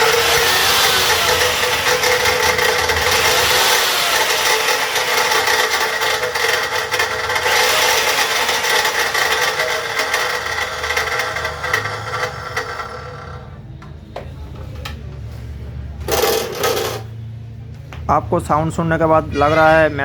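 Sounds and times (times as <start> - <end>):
machine knocking as it slows: 0.0 - 13.5
cut-off machine grinding: 0.0 - 13.6, 16.1 - 17.2.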